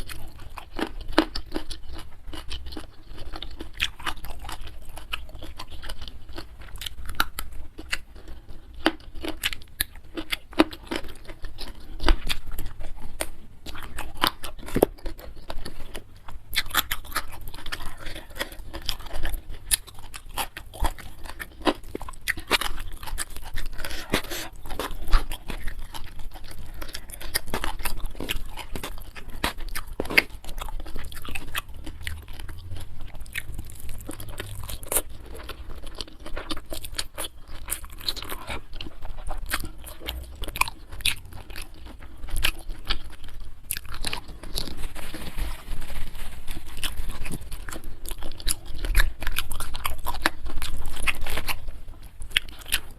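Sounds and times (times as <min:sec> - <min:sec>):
chewing and crunching food: 0:00.0 - 0:52.9
wet mouth sounds: 0:29.7 - 0:35.6.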